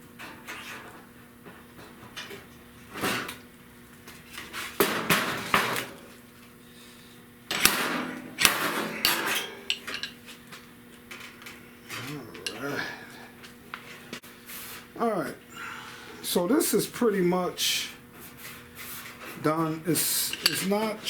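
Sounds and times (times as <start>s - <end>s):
faint steady hum: 0.0s - 21.0s
metal tools scraping sheet steel: 18.4s - 21.0s.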